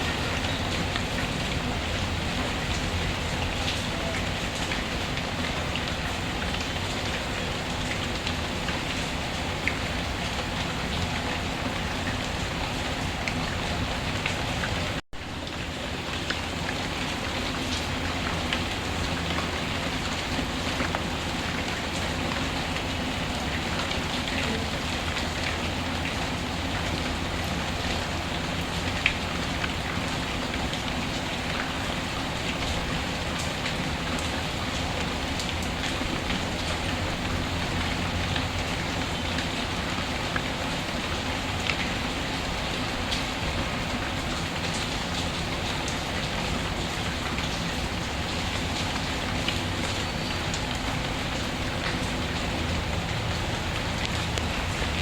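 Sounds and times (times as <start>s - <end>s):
steady rainfall: 0.0s - 55.0s.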